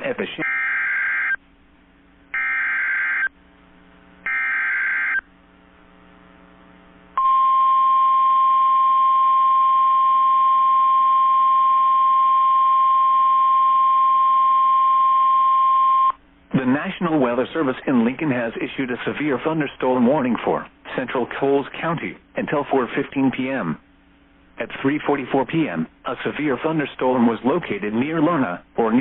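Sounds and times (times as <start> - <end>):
short buzzing data bursts: 2.3 - 3.3, 4.2 - 5.3.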